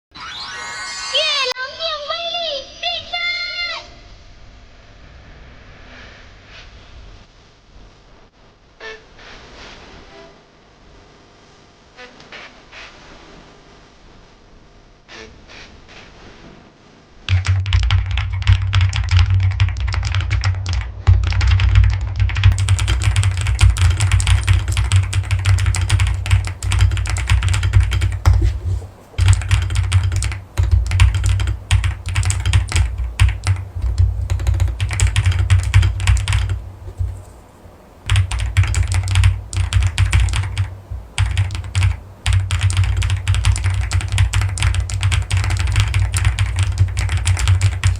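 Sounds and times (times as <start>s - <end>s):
mechanical keyboard typing: 17.3s - 37.3s, 38.1s - 47.9s.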